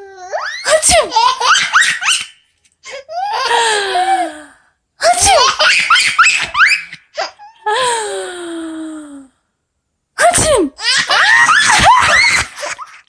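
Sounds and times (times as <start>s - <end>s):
woman sneezing: 10.2s - 10.8s.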